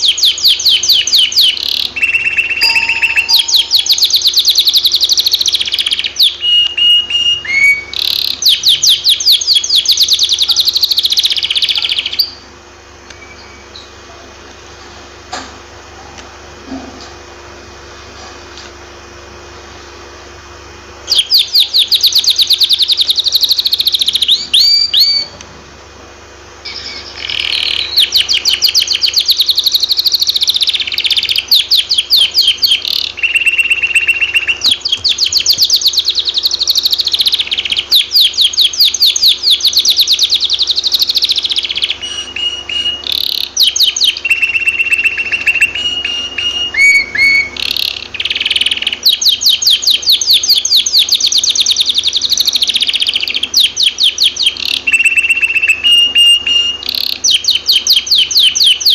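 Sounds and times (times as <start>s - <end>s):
canary trilling: 0.0s - 12.5s, 21.0s - 25.3s, 26.6s - 58.9s
canary whistled notes: 0.6s - 10.6s, 30.6s - 37.0s, 38.0s - 51.1s, 53.6s - 58.9s.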